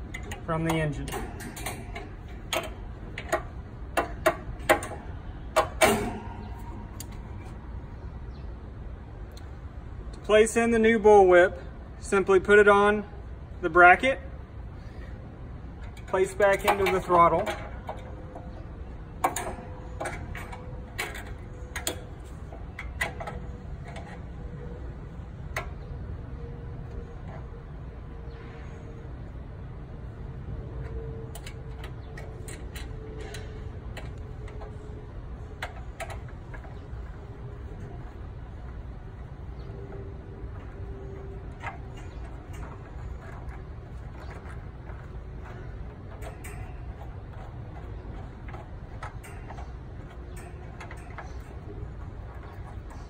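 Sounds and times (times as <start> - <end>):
steady low hum: 0.0 - 53.0
light metallic clicks and clinks: 31.3 - 53.0.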